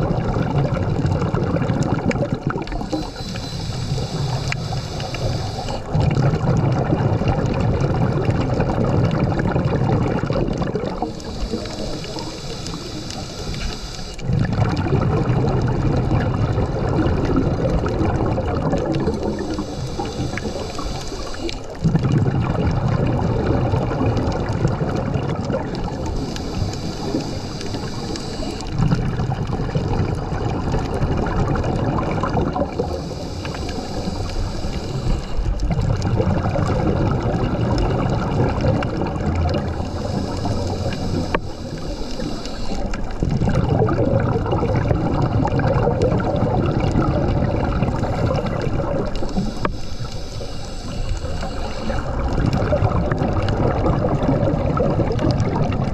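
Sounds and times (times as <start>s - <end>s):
exhaled bubbles rumbling: 0.0s - 55.9s
regulator inhale hiss: 2.7s - 6.0s, 10.9s - 14.3s, 17.8s - 21.8s, 25.8s - 28.8s, 32.3s - 36.0s, 36.7s - 43.2s, 47.9s - 52.8s.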